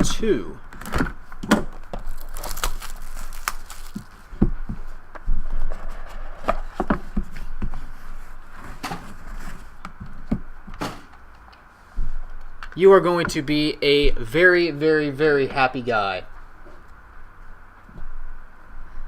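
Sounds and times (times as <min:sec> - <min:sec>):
cardboard and wrappers crinkling: 0:01.7 - 0:04.4.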